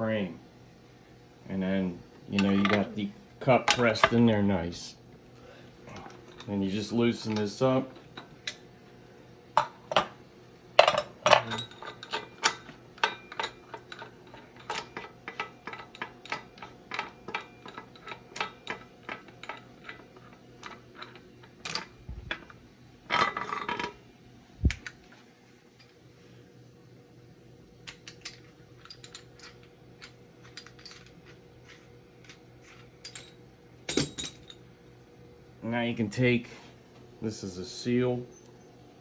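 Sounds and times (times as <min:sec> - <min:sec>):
clatter of metal parts: 0:10.8 - 0:24.0, 0:27.8 - 0:34.6.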